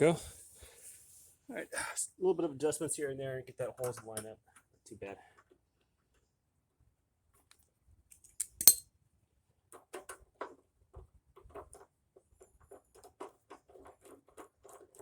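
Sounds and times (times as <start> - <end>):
metal hardware clinks: 8.4 - 8.8.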